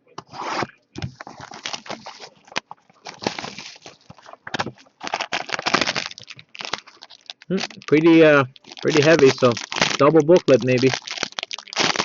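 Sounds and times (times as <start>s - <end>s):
card box tearing and crinkling: 1.2s - 2.3s, 3.0s - 4.1s, 5.0s - 12.0s.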